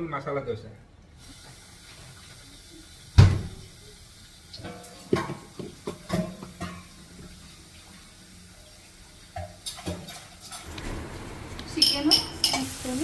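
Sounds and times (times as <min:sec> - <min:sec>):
metal pots and utensils clinking: 0:04.6 - 0:07.3, 0:09.4 - 0:13.0.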